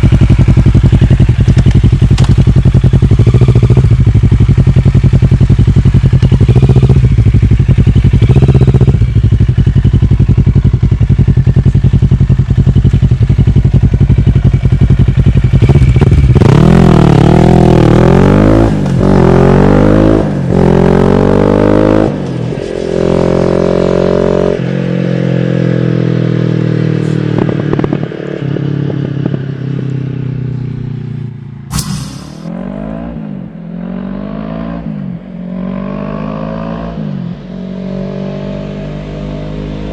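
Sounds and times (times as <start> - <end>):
motorcycle engine revving: 0.0 - 22.2.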